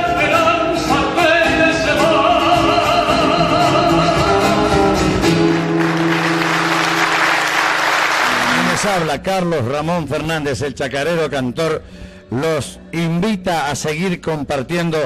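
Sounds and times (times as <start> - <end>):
sustained instrumental accompaniment: 0.9 - 9.1
applause: 5.3 - 9.1.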